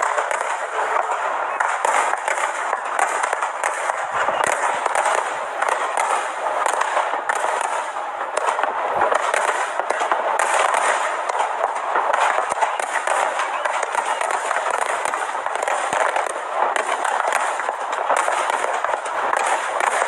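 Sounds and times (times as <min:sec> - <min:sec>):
deep fireworks bangs: 0:00.0 - 0:20.0
fireworks crackling and popping: 0:00.0 - 0:20.0.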